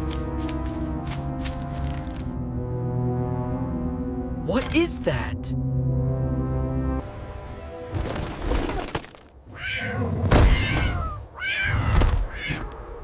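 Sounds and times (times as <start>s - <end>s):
cat yowling: 9.5s - 12.7s.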